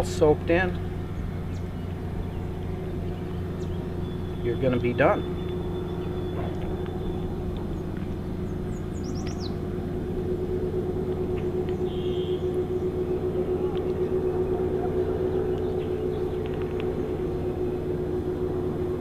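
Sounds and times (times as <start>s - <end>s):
steady mechanical hum: 0.0s - 19.0s
bird chirping: 0.8s - 9.7s, 11.3s - 17.8s.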